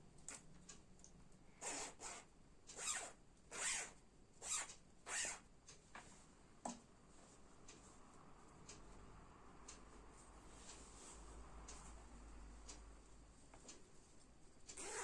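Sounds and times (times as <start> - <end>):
zip run back and forth: 1.6 - 5.4, 14.8 - 15.0.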